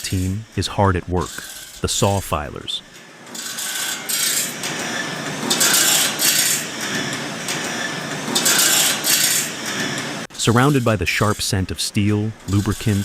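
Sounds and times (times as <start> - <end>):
hissing grinding bursts: 12.4 - 13.0.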